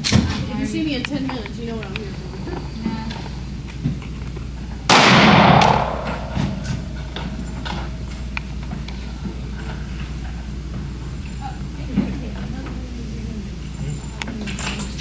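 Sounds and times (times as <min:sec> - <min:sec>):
pistol shot with echo: 0:04.9 - 0:07.9.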